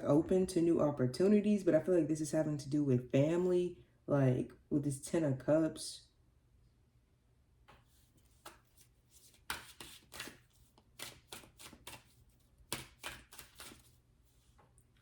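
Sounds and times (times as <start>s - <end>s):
cards being shuffled: 7.7s - 14.8s.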